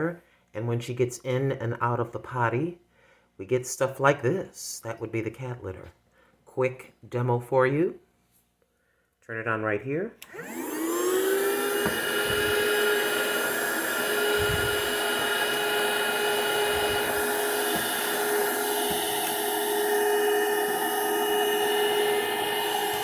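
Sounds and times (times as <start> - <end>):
handheld vacuum cleaner whining: 10.2 - 23.0.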